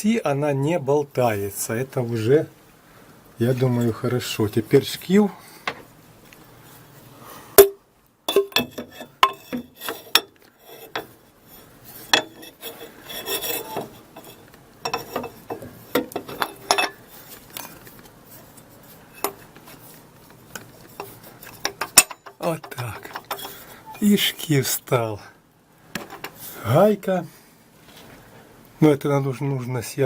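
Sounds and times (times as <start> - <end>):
metallic clicks and knocks: 7.6 - 11.2, 13.2 - 17.0, 20.6 - 23.6.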